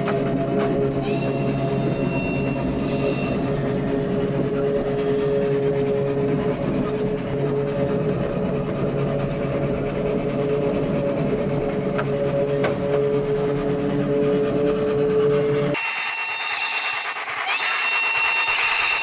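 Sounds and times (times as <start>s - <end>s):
thin high tone: 15.8s - 19.0s.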